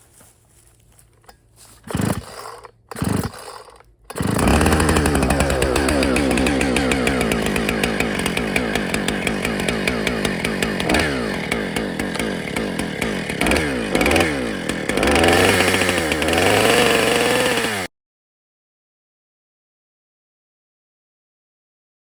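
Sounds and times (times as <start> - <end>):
chainsaw engine revving: 1.2 - 17.9.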